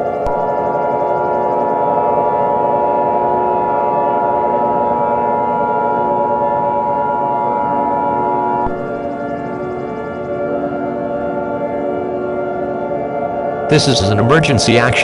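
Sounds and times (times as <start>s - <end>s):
two-tone alert tone: 0.0s - 0.7s, 8.6s - 9.2s
droning ambient music: 0.0s - 15.0s.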